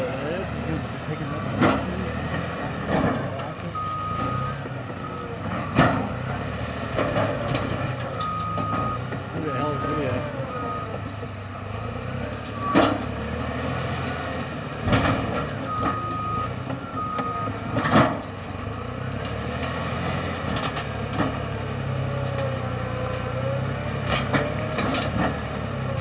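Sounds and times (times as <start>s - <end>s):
bulldozer diesel engine running: 0.0s - 26.0s
reverse alarm beeping: 8.2s - 11.0s.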